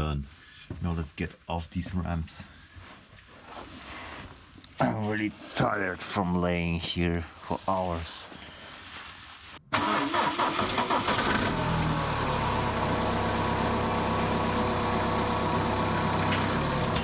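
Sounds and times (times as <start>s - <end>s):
diesel engine starting and idling: 9.7s - 17.0s.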